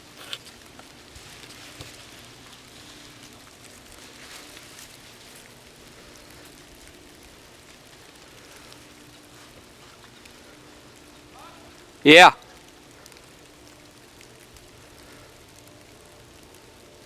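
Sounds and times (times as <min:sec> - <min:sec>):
steady outdoor hiss: 0:00.0 - 0:17.0
faint ticks: 0:12.5 - 0:17.0.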